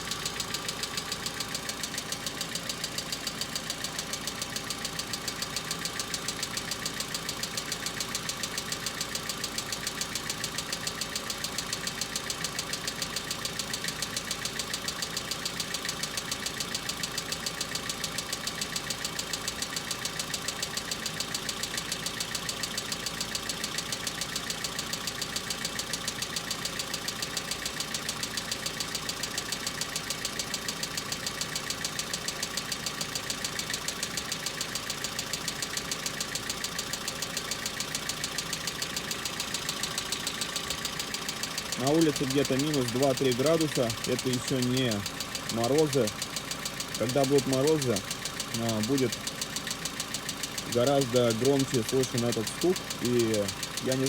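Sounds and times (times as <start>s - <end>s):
car engine idling: 0.0s - 54.0s
valve lifters ticking: 0.1s - 54.0s.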